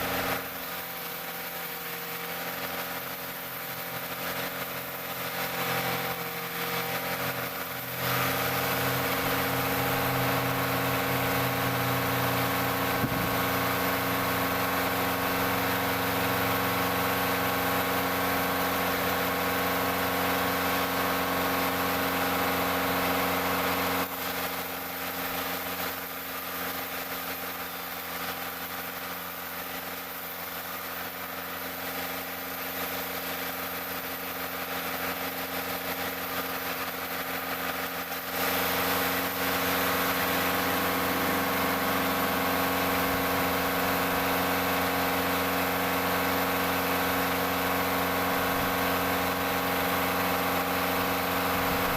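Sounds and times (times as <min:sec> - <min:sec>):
engine running: 0:00.0 - 0:51.9.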